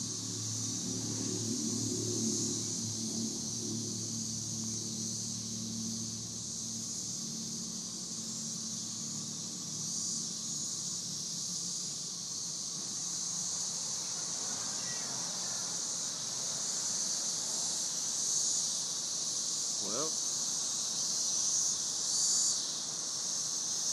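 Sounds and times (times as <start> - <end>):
low hum: 0.0 - 11.3
cicadas droning: 0.0 - 23.9.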